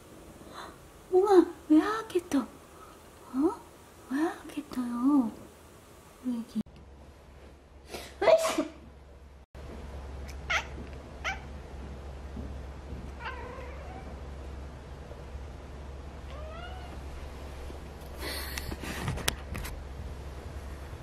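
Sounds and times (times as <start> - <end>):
cat meowing: 10.4 - 11.5, 13.2 - 14.2, 16.3 - 17.0.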